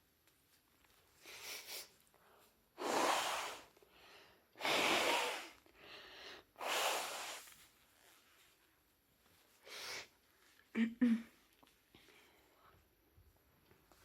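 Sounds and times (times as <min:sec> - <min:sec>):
soft breath: 0:01.2 - 0:07.6, 0:11.9 - 0:13.0.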